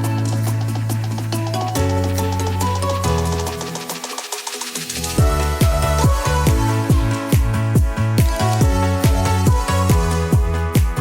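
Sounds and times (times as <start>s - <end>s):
electronic music: 0.0s - 11.0s
deep kick drum beat: 5.2s - 11.0s.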